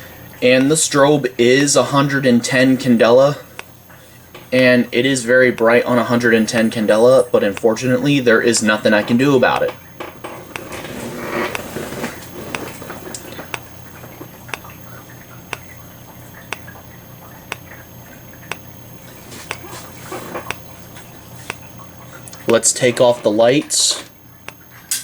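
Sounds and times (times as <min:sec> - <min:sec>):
strobe sharp tick: 0:03.5 - 0:03.8, 0:05.2 - 0:08.8, 0:10.4 - 0:13.8, 0:14.4 - 0:16.8, 0:17.5 - 0:17.8, 0:18.4 - 0:21.7.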